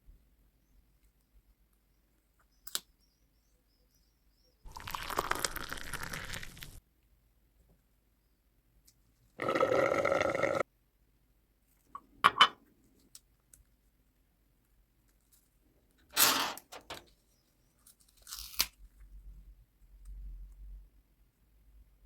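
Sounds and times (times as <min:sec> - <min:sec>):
paper crinkling and crunching: 0:17.8 - 0:19.0.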